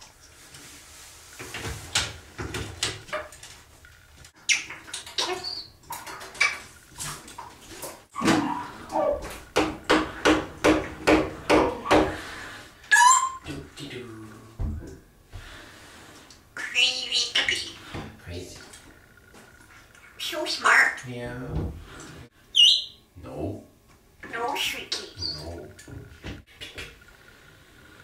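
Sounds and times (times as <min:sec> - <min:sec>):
parrot squawking and whistling: 0:04.5 - 0:05.7, 0:12.9 - 0:13.4, 0:16.6 - 0:17.8, 0:22.5 - 0:23.0.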